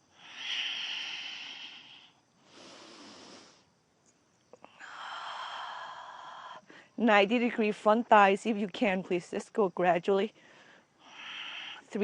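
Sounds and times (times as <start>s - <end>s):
person breathing deeply: 0.0s - 3.7s.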